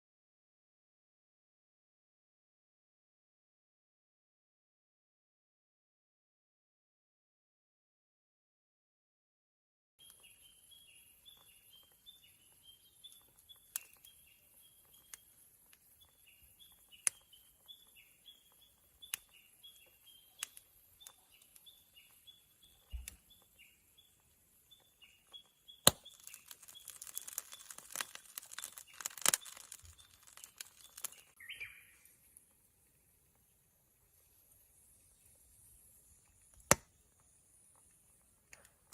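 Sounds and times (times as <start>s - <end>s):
bird chirping: 10.0s - 32.4s
crackling and sizzling: 10.0s - 38.9s
oysters popping on grill: 25.8s - 31.4s.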